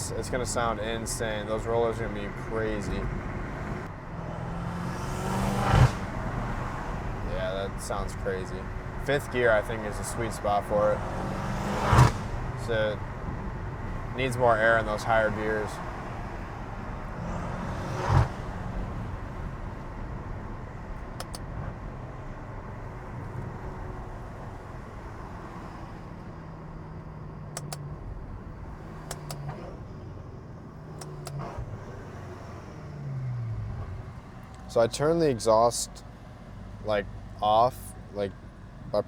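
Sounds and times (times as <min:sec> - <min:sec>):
car engine cruising: 0:00.0 - 0:39.0
faint clicks: 0:21.2 - 0:21.5, 0:27.5 - 0:27.9, 0:29.0 - 0:29.6, 0:30.9 - 0:31.5.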